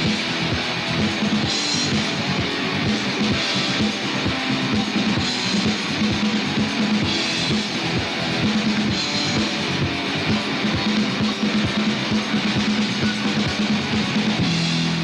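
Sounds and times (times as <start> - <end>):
steady drum beat: 0.0 - 15.0
strummed electric guitars: 0.0 - 15.0.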